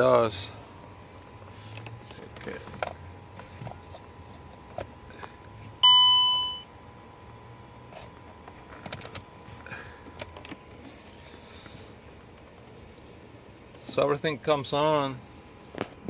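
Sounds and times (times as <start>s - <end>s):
dashboard warning chime: 5.8s - 6.7s.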